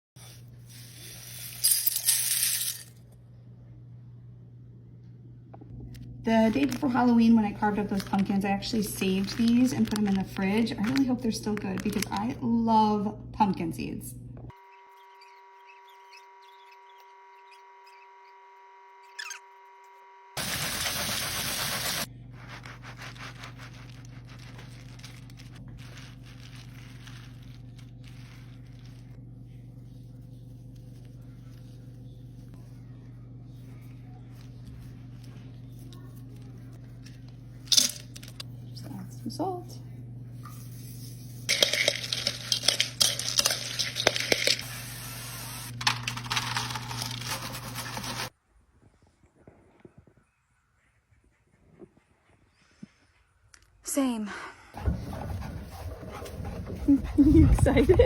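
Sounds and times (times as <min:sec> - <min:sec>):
seeds rattling in a metal pan: 0:00.2 - 0:03.0, 0:07.7 - 0:12.2, 0:21.8 - 0:29.2, 0:41.5 - 0:44.7, 0:45.8 - 0:48.3
steady low hum: 0:00.2 - 0:14.5, 0:20.5 - 0:46.8, 0:54.6 - 0:58.0
hands scraping pumpkin seeds: 0:21.0 - 0:29.2.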